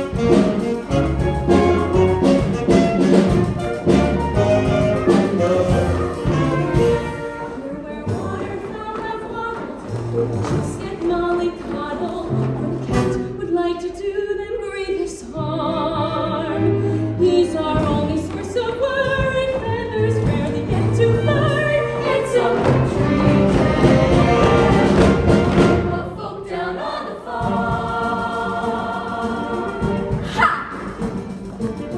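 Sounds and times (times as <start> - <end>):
instrumental accompaniment: 0.0 - 8.7, 27.4 - 31.9.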